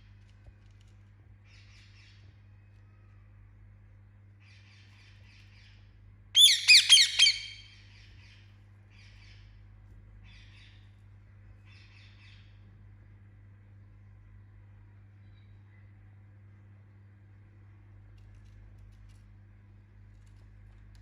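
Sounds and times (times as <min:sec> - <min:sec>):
parakeet soft chattering: 0:06.4 - 0:07.6
parakeet squawking: 0:06.4 - 0:07.7.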